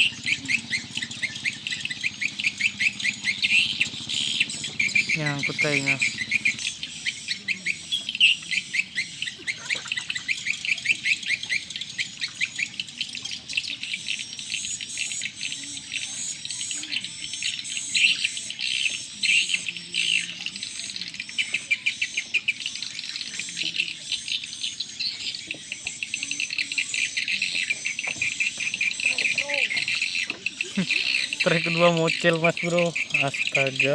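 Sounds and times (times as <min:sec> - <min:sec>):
birds chirping: 0:00.0 - 0:33.9
insects calling: 0:00.0 - 0:33.9.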